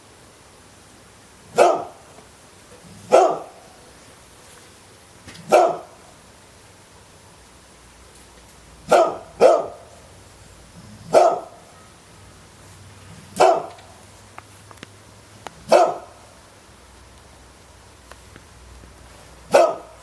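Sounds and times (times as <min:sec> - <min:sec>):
dog barking: 0:01.5 - 0:02.0, 0:03.0 - 0:03.7, 0:05.4 - 0:06.0, 0:08.8 - 0:10.0, 0:11.0 - 0:11.8, 0:13.3 - 0:13.9, 0:15.6 - 0:16.2, 0:19.5 - 0:20.0.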